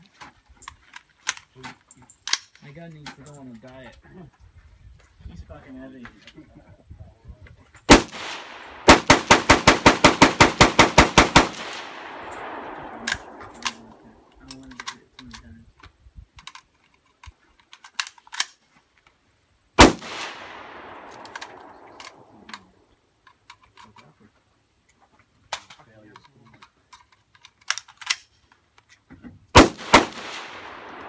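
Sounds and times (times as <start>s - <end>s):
rifle shots echoing: 7.9s - 14.3s, 19.8s - 22.5s, 29.6s - 31.0s
small clicks and knocks: 13.0s - 19.2s, 21.1s - 24.2s, 24.8s - 29.4s.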